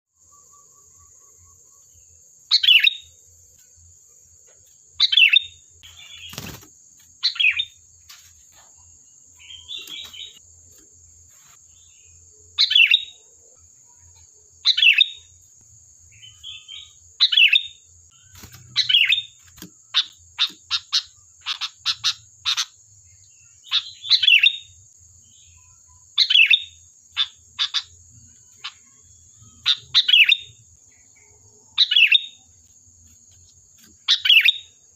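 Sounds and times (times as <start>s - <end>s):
bird chattering calls: 16.3s - 22.8s, 27.2s - 28.0s, 29.5s - 30.6s.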